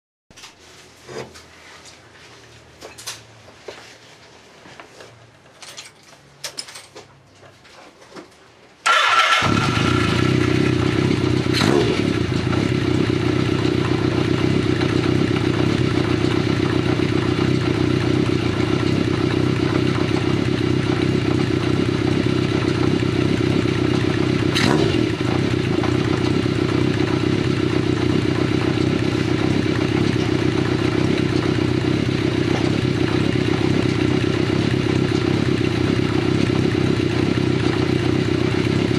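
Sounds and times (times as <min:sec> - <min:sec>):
motorcycle engine running: 0:08.9 - 0:38.9.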